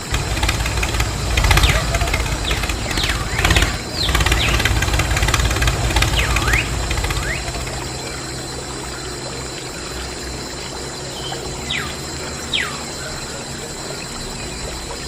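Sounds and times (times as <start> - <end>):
bird chirps: 0.0 - 15.0
low steady hum: 0.0 - 15.0
water pouring and trickling: 0.0 - 15.0.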